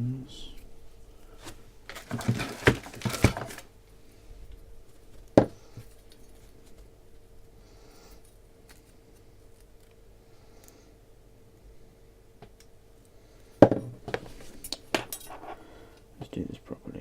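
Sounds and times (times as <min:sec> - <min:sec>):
faint steady hum: 0:00.0 - 0:17.0
faint cable rustles: 0:00.5 - 0:10.0
cable clattering on desk: 0:01.9 - 0:03.6.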